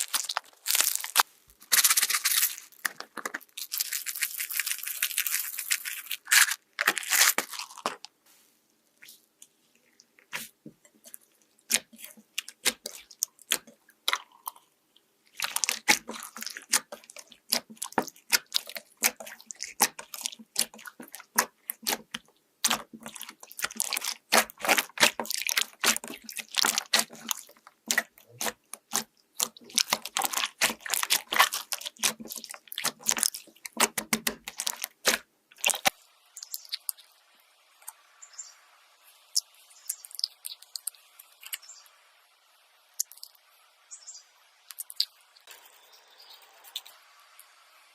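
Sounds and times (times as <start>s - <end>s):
slime crackling and popping: 0.0s - 8.1s, 11.7s - 14.5s, 15.3s - 37.0s.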